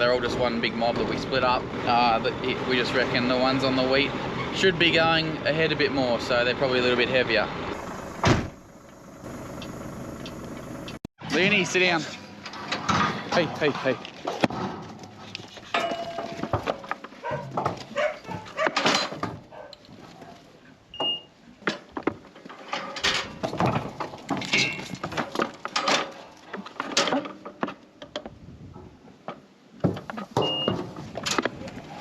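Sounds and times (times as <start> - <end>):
metal clanks of crate and gates: 11.2 - 19.9, 21.0 - 28.2, 29.3 - 32.0.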